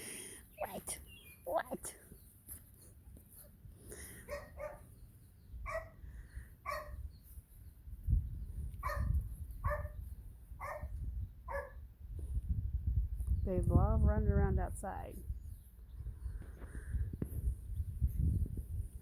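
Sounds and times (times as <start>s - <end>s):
puppy barking high yaps: 4.3s - 4.8s, 5.6s - 6.0s, 6.6s - 7.0s, 8.8s - 10.0s, 10.6s - 10.9s, 11.5s - 11.8s.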